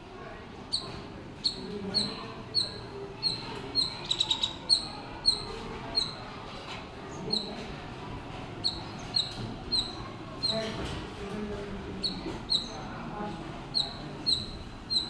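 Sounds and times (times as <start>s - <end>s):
squirrel chirping: 0.7s - 6.2s, 8.6s - 10.6s, 12.0s - 12.8s, 13.7s - 15.0s.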